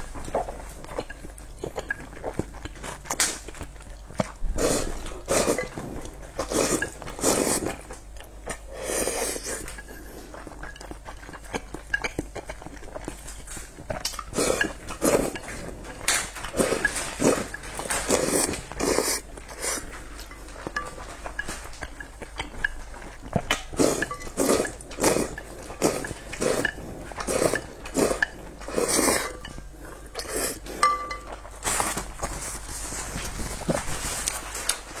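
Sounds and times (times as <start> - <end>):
noodle slurping and chewing: 0.0 - 35.0
utensils clinking against bowl: 14.2 - 22.9, 23.8 - 32.4.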